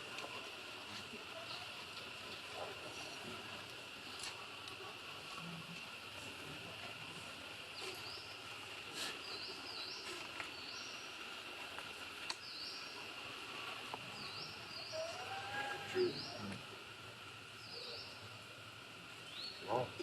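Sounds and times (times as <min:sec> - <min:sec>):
insects droning: 0:00.0 - 0:20.0
low gliding animal call: 0:14.8 - 0:16.6.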